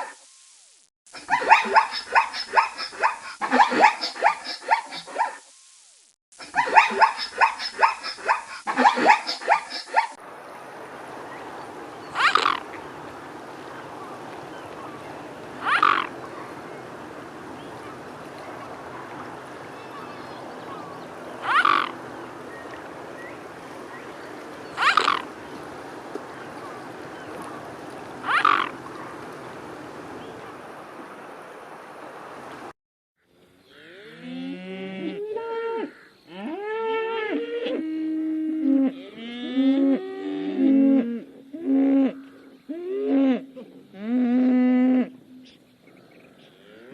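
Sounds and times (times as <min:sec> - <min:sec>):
steady background hiss: 0:00.0 - 0:32.7.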